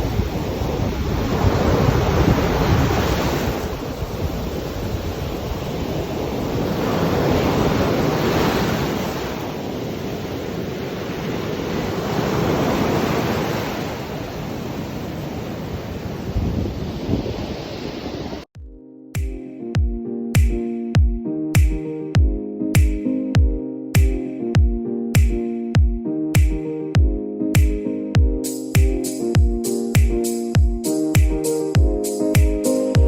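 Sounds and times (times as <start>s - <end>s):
sea waves breaking on beach: 0.0s - 18.5s
wind rumbling on microphone: 0.0s - 18.5s.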